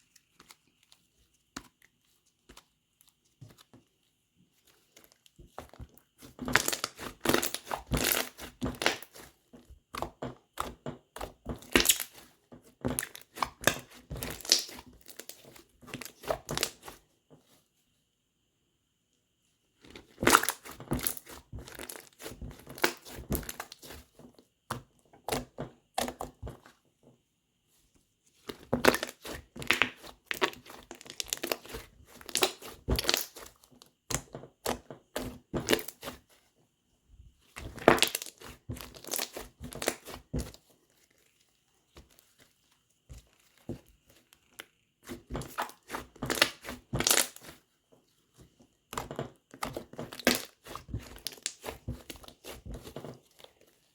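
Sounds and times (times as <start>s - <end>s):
slime crackling and popping: 6.5s - 9.2s, 11.6s - 12.2s, 13.0s - 16.8s, 28.8s - 33.5s, 37.8s - 40.2s, 45.5s - 47.6s, 49.6s - 52.6s.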